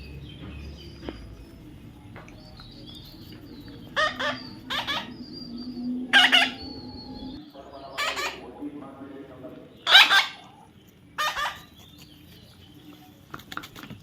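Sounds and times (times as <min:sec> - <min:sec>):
parrot squawking: 0:03.1 - 0:08.6, 0:09.8 - 0:12.0.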